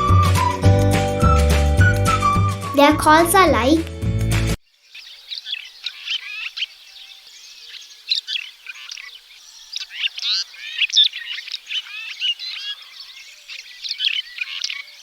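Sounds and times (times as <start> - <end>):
swallows chirping and twittering: 4.6 - 15.0.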